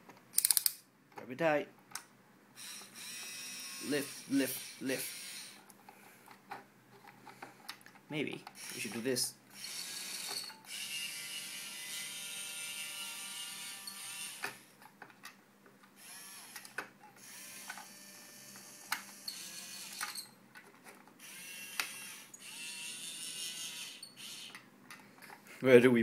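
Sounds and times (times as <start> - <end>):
small geared motors whirring: 2.6 - 5.6.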